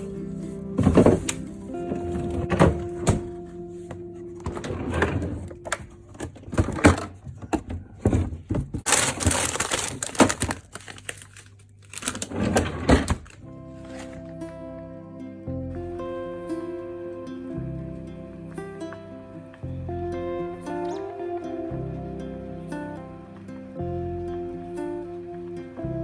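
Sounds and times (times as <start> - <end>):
soft background music: 0.0 - 7.1, 11.9 - 26.0.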